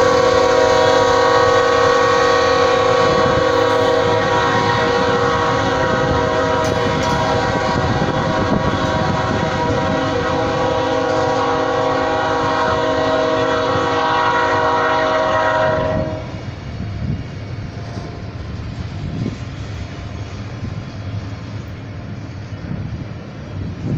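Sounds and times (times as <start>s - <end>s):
locomotive air horn blast: 0.0s - 16.5s
rumble of passing train: 0.0s - 23.9s.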